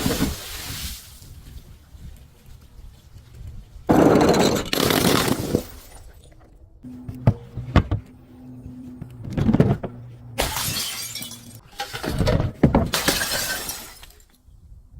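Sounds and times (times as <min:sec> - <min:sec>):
glass bottles shattering: 0:10.4 - 0:14.4.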